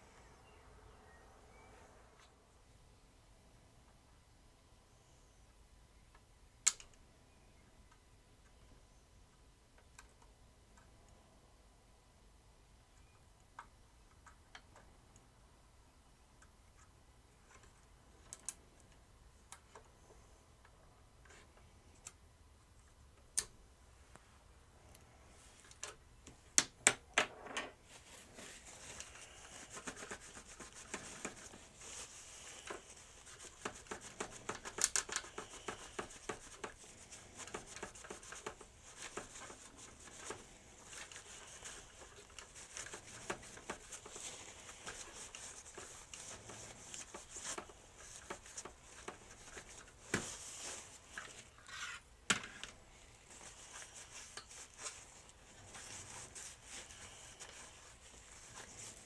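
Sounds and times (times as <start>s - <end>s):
rubbing and scraping plastic: 27.8s - 59.0s.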